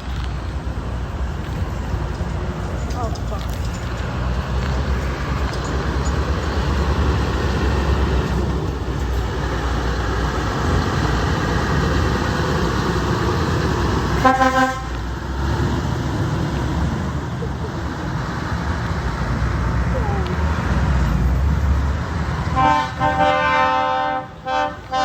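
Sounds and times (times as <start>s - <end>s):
road traffic rumble: 0.0s - 25.0s
truck air horn blast: 14.2s - 15.0s, 22.5s - 25.0s.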